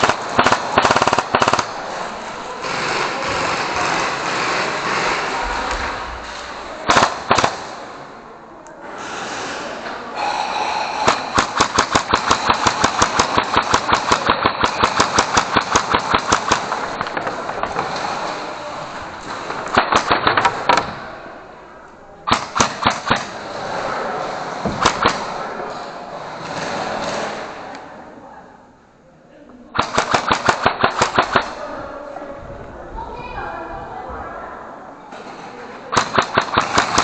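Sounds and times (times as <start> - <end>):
airsoft gun firing: 0.0 - 8.1, 10.3 - 18.4, 19.2 - 21.3, 22.2 - 23.6, 24.5 - 25.5, 29.8 - 31.6, 35.9 - 37.0.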